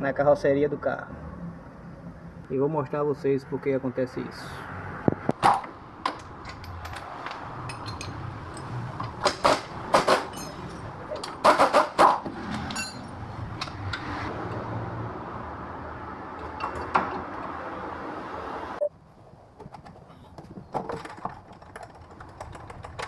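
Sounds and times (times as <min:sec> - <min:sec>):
metal clinks and knocks: 0:05.4 - 0:14.7, 0:20.7 - 0:23.0.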